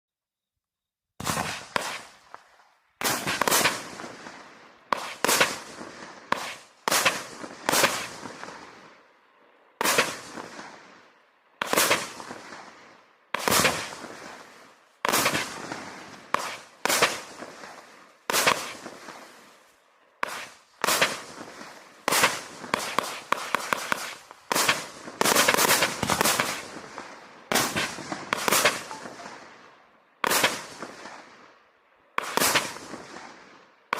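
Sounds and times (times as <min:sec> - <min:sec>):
firework bangs: 0:01.2 - 0:08.8, 0:09.8 - 0:10.9, 0:11.6 - 0:12.8, 0:13.4 - 0:19.6, 0:20.2 - 0:31.3, 0:32.2 - 0:33.4.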